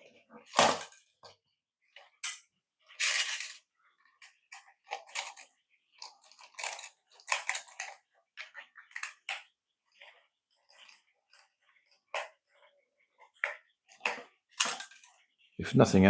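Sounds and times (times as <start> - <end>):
plastic toy casing scraping and clicking: 2.2 - 9.5, 13.9 - 15.2.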